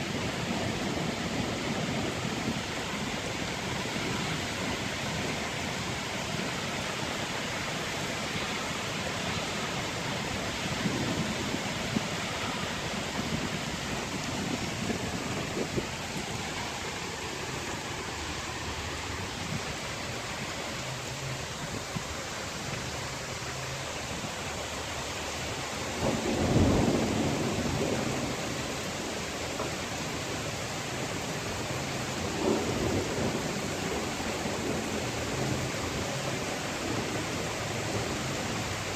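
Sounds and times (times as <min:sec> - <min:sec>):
thunder rumbling: 0:00.0 - 0:20.6, 0:25.4 - 0:38.9
steady rain hissing: 0:00.0 - 0:38.9.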